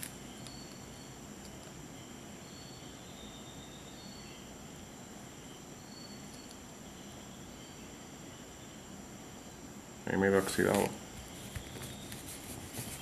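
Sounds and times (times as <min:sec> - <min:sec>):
faint high chirps: 0:00.0 - 0:10.7
faint background hiss: 0:00.0 - 0:13.0
high-pitched whine: 0:00.0 - 0:13.0.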